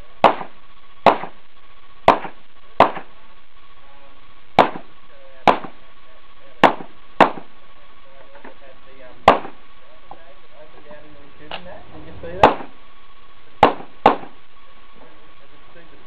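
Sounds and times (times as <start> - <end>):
pistol shots with echo: 0.2 - 1.4, 2.1 - 3.1, 4.6 - 5.8, 6.6 - 7.5, 9.2 - 9.6, 12.4 - 12.8, 13.6 - 14.4.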